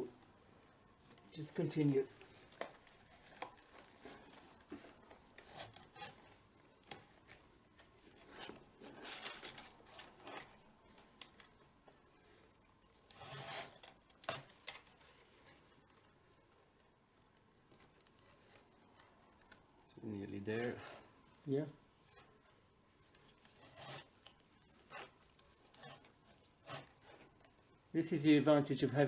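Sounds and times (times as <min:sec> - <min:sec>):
leather strap rubbing and scraping: 0:02.4 - 0:07.4, 0:08.1 - 0:10.6, 0:13.1 - 0:15.6, 0:21.8 - 0:27.9.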